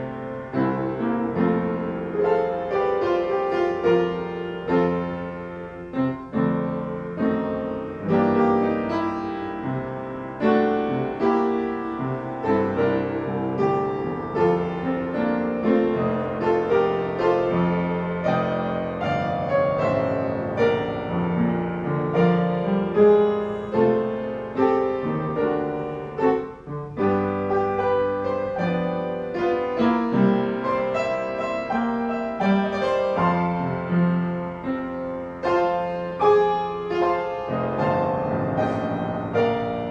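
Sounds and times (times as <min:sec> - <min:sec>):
piano piece: 0:00.0 - 0:39.9.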